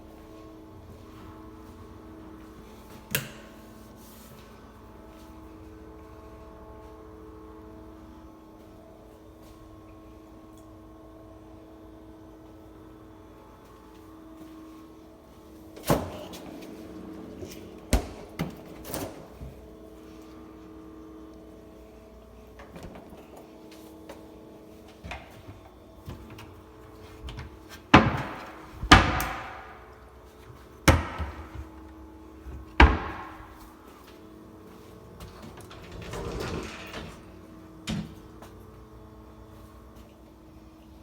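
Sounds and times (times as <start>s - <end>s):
steady hum: 0.0s - 41.0s
doors banging shut: 17.8s - 19.6s, 27.2s - 29.9s, 30.8s - 33.8s, 35.2s - 38.3s.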